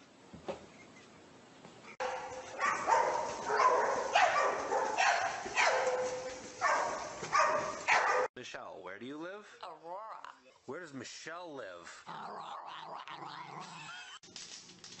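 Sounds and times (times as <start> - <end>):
dog barking and yowling: 1.9 - 8.3.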